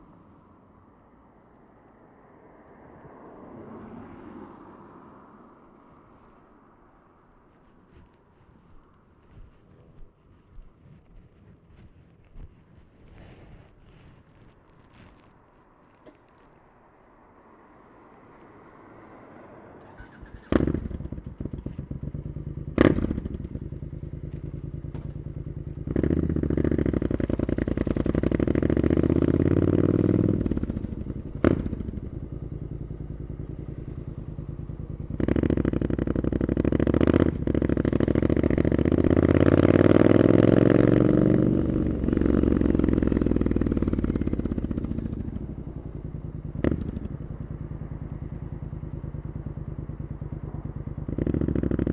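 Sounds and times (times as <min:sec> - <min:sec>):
exhaust cracks: 0:06.1 - 0:16.8, 0:19.8 - 0:51.9
motorcycle engine revving: 0:19.8 - 0:51.9.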